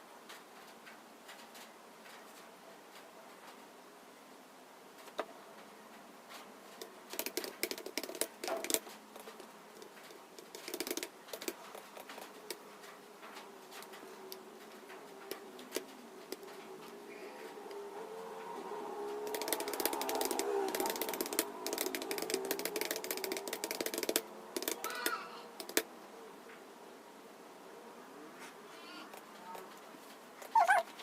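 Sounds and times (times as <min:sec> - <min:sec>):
computer keyboard typing: 0:06.8 - 0:12.6, 0:19.1 - 0:25.9.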